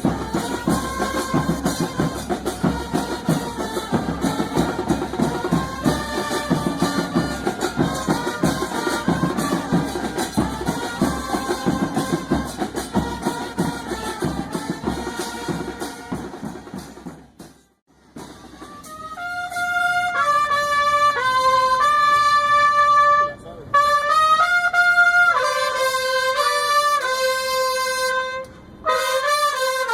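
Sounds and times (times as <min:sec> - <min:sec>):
drum beat: 0:00.0 - 0:18.8
horn notes: 0:00.0 - 0:29.9
long held trumpet-like notes: 0:00.0 - 0:29.9.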